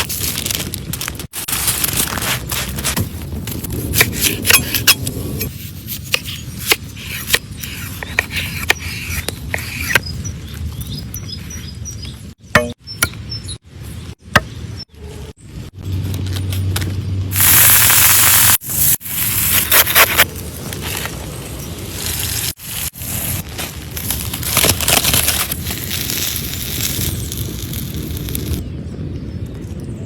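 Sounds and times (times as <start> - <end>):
birds chirping: 7.5 - 15.2.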